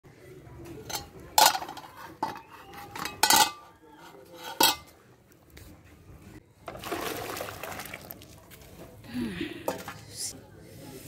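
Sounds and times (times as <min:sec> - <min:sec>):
kitchenware clinking: 0:00.7 - 0:05.0.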